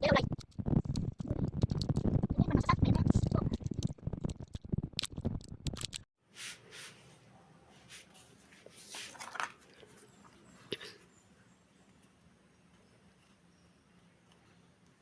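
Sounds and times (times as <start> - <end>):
rustling and rapid clicking: 0.0 - 6.1.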